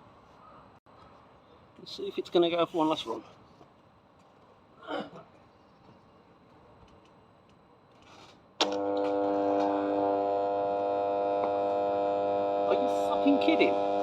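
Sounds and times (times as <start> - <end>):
loud steady motor hum: 8.6 - 14.0.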